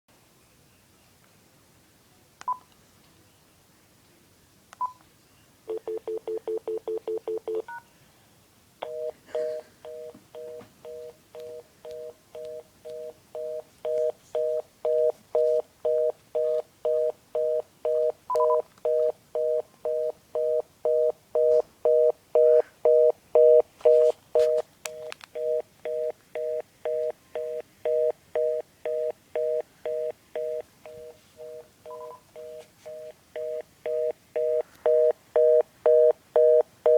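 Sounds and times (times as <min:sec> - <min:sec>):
keypad beep: 0:05.7 - 0:07.8, 0:08.8 - 0:36.9
stuttering dial tone: 0:08.8 - 0:36.9
two-tone busy signal: 0:25.4 - 0:36.9.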